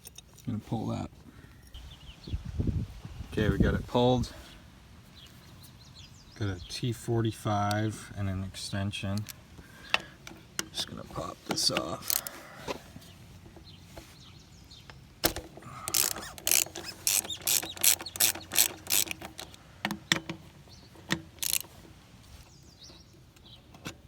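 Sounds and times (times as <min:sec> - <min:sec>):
ratchet wrench pawl clicking: 0:12.0 - 0:12.3, 0:15.9 - 0:19.6, 0:21.4 - 0:21.7.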